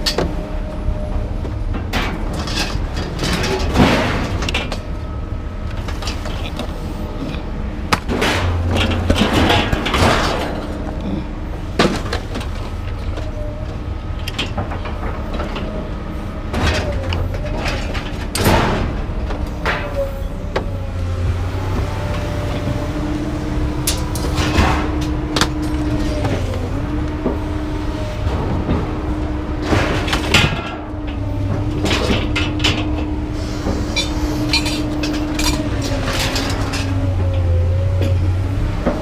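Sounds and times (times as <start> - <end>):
knocks and rattles: 1.2 - 4.9, 5.7 - 15.8, 28.2 - 39.0.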